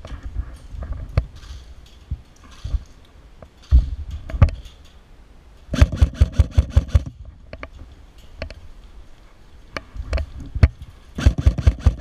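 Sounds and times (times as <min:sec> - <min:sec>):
airsoft gun shots: 0:05.8 - 0:07.1, 0:11.2 - 0:12.0.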